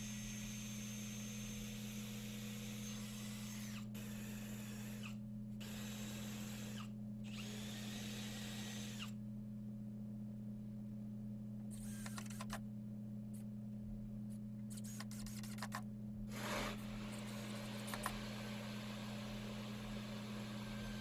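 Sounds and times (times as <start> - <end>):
power drill running: 0.0 - 9.2, 16.3 - 21.0
steady low hum: 0.0 - 21.0.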